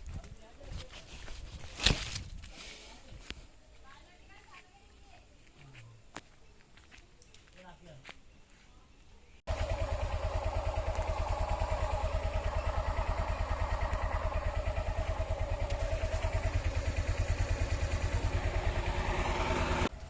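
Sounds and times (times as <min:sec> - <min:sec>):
small engine running: 0:09.5 - 0:20.0.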